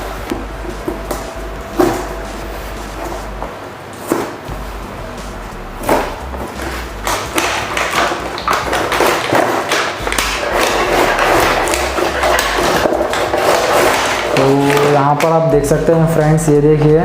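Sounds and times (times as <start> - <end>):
plastic track pieces knocking: 6.5 - 15.5.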